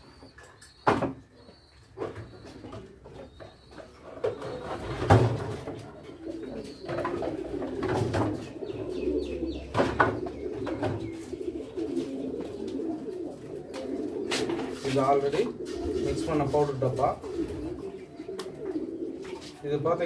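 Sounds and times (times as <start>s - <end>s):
pigeons cooing: 0.0s - 20.0s
sharp knocks and clatters: 9.7s - 11.2s.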